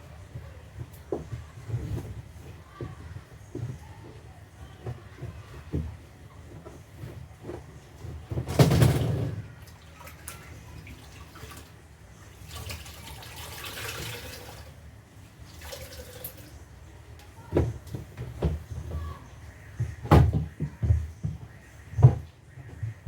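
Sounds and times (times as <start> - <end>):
knocks and clunks: 0.3 - 9.6, 17.4 - 23.0
water splashing in a basin: 9.6 - 14.8, 15.4 - 16.6.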